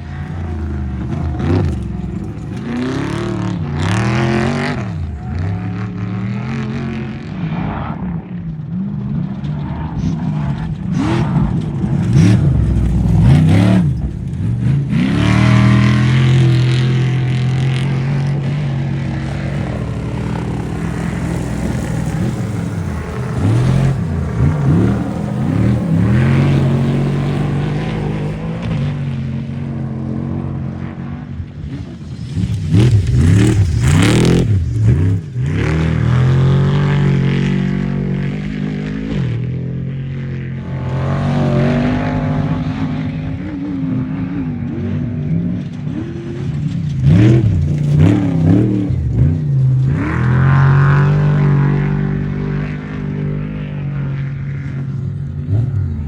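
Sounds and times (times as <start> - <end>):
race vehicle engines revving: 0.0 - 56.0.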